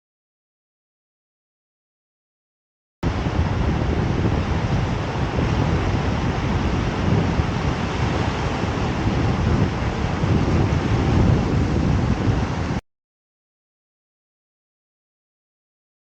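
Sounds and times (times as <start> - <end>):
ocean surf roaring: 3.0 - 12.8
wind buffeting microphone: 3.0 - 12.8.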